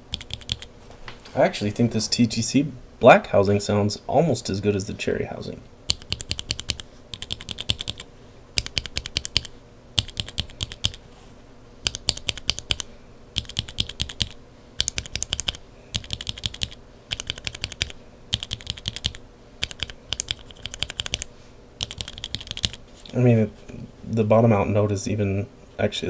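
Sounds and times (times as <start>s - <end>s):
keyboard switches clacking: 0.1s - 0.7s, 8.6s - 11.0s.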